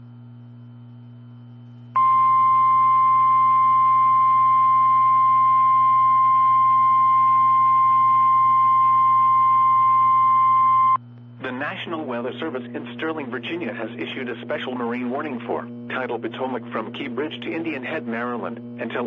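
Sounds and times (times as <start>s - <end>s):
low electrical hum: 0.0s - 19.0s
loud steady alarm tone: 2.0s - 11.0s.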